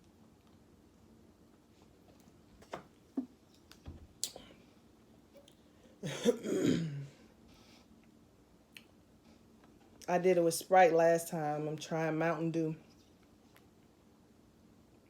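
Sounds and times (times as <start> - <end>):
woman clearing her throat: 6.0 - 7.2.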